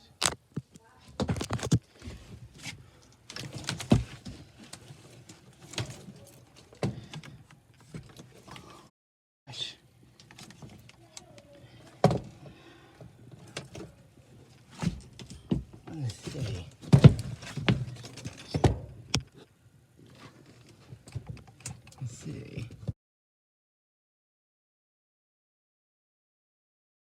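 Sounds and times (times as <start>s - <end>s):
handling knocks and rustles: 0.2s - 8.8s, 13.3s - 19.4s.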